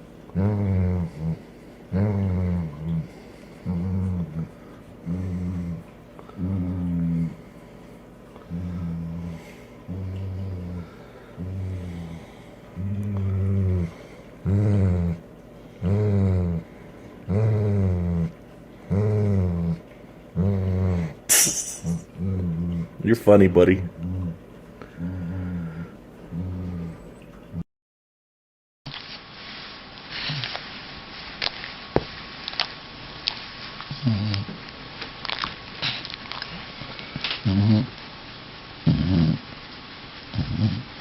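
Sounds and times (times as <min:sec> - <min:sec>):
dog growling: 0:00.3 - 0:07.6, 0:08.4 - 0:23.0, 0:23.8 - 0:27.6, 0:33.9 - 0:34.6, 0:37.2 - 0:38.0, 0:38.8 - 0:39.5, 0:40.3 - 0:41.0.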